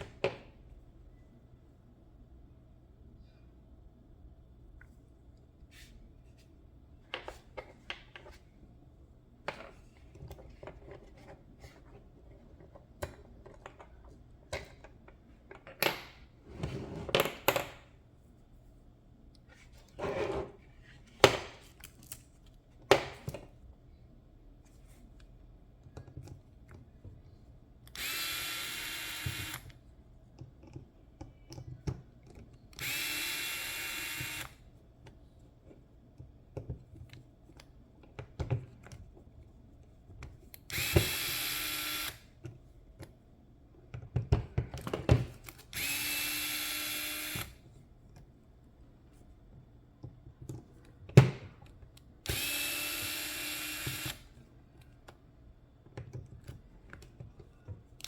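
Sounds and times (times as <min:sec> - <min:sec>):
electric screwdriver whirring: 0:27.9 - 0:29.7, 0:32.8 - 0:34.6, 0:40.7 - 0:42.2, 0:45.7 - 0:47.6, 0:52.3 - 0:54.3.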